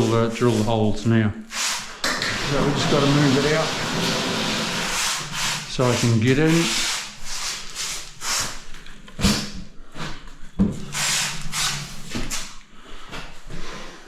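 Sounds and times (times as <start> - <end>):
cabinet scraping across floor: 2.2 - 5.5.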